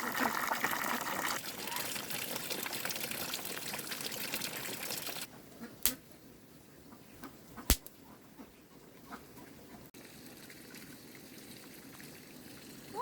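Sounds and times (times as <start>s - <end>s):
water pouring: 0.0s - 5.3s, 10.0s - 13.0s.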